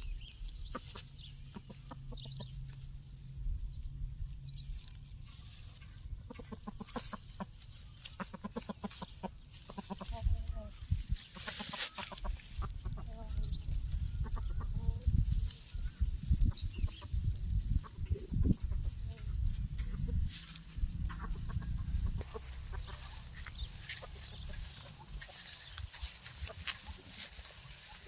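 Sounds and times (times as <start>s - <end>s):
low rumbling noise: 16.0s - 24.8s.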